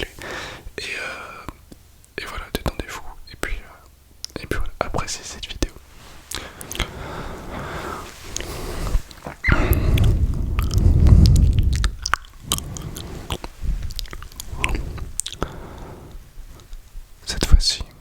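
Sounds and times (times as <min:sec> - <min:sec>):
mouth clicks and lip smacks: 0:04.2 - 0:04.8, 0:08.4 - 0:15.6.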